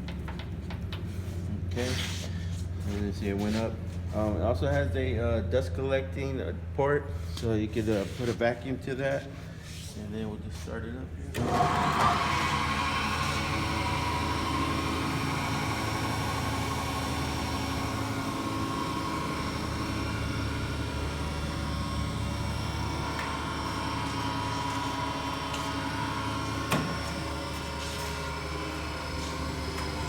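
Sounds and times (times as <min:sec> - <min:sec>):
grinder motor humming with whine: 0:11.3 - 0:30.0.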